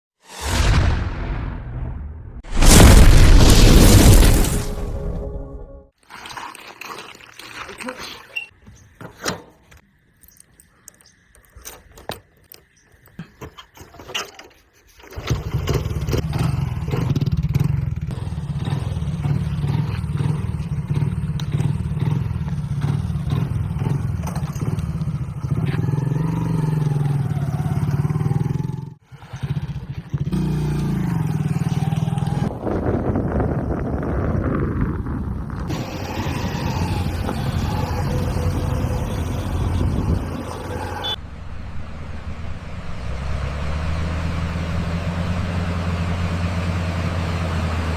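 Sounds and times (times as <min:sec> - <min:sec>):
diesel engine revving: 0:15.2 - 0:47.9.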